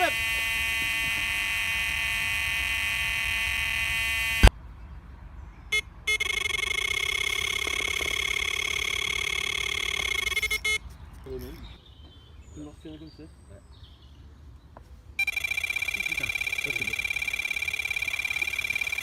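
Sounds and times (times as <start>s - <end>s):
alarm click: 0.0s - 4.5s, 5.7s - 10.8s, 15.2s - 19.0s
electronic bite alarms screaming: 0.0s - 4.5s, 5.7s - 10.8s, 15.2s - 19.0s
low fluttering alarm tone: 0.0s - 4.5s, 5.7s - 10.8s, 15.2s - 19.0s
short beep: 5.7s - 10.8s, 15.2s - 19.0s.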